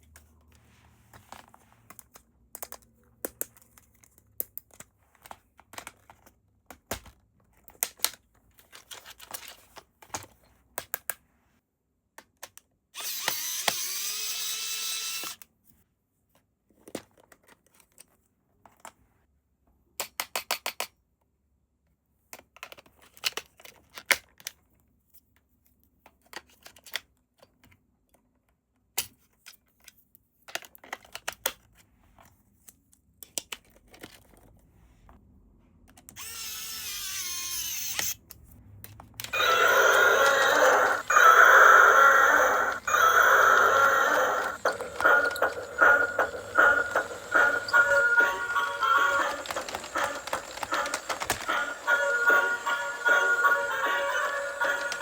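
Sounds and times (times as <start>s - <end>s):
small electric motor whirring: 13.0s - 15.4s, 36.2s - 38.1s, 39.3s - 55.0s.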